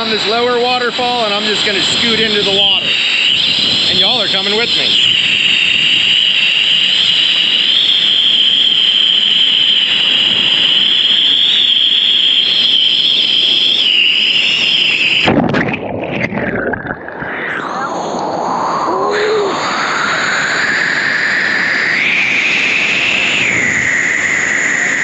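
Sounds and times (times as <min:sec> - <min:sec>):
muffled underwater gurgling: 0:00.0 - 0:05.6, 0:15.2 - 0:22.2, 0:22.8 - 0:25.0.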